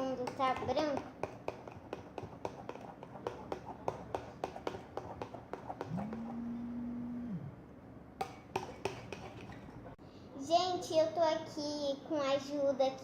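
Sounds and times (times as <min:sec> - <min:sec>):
spoon stirring slime: 0:00.0 - 0:06.6, 0:08.2 - 0:10.0
steady low hum: 0:00.0 - 0:11.2
spoon knocking against pot: 0:08.2 - 0:09.6.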